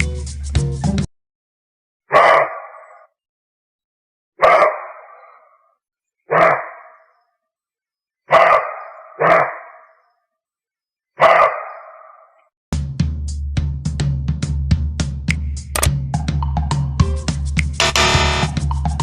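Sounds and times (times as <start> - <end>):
dog barking with echo: 2.1 - 3.1, 4.4 - 5.6, 6.3 - 7.2, 8.3 - 10.0, 11.2 - 12.4.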